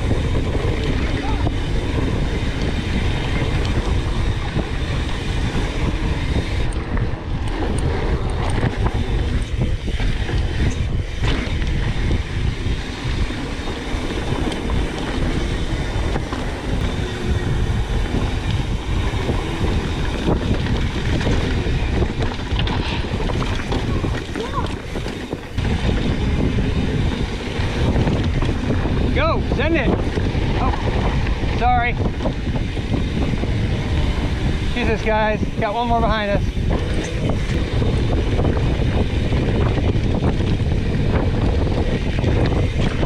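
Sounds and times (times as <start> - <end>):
bike knocks and rattles: 0.0 - 29.1
bike tyres rumbling on dirt: 0.0 - 43.0
wind over microphone: 0.0 - 43.0.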